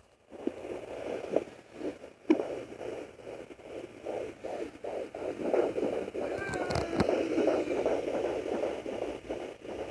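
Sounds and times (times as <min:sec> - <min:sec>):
fetal doppler whooshing hiss: 0:04.1 - 0:09.9.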